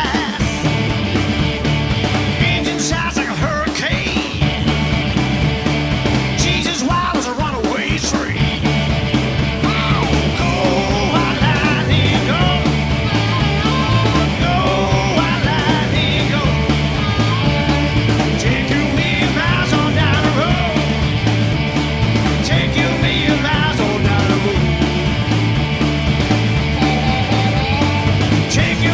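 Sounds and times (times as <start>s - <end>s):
rock band playing: 0.0s - 28.9s.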